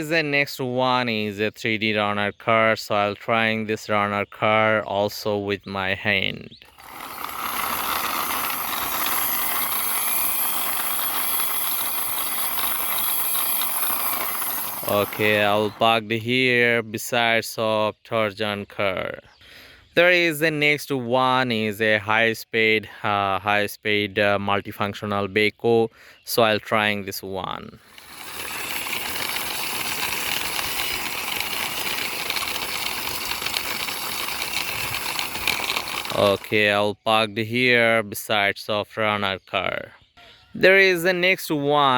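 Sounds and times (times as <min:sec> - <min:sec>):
toy car wheels rolling on floor: 0:06.1 - 0:15.9, 0:26.7 - 0:36.8.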